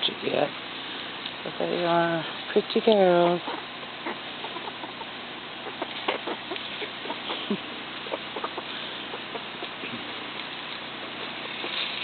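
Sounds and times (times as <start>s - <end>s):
background hiss: 0.0s - 12.0s
hens clucking softly: 3.2s - 12.0s.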